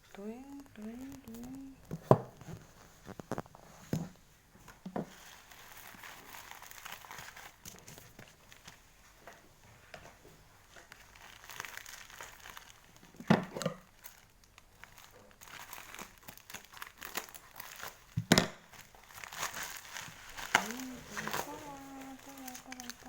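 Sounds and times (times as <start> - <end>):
plastic packaging crinkling: 0.2 - 4.2, 5.0 - 9.3, 10.1 - 23.0.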